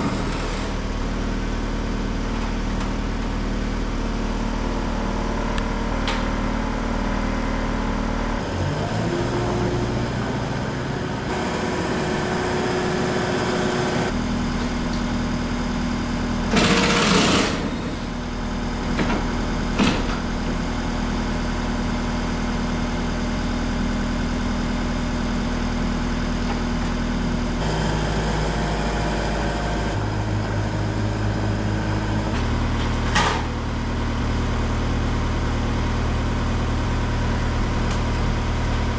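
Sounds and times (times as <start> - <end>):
motor running: 0.0 - 0.9, 16.4 - 18.3
loud burst of noise: 16.5 - 18.2.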